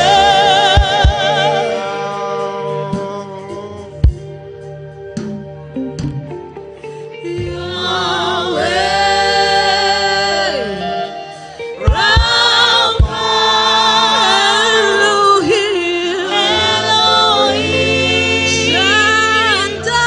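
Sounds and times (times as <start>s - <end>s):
voices singing long notes: 0.0s - 6.0s, 7.1s - 20.0s.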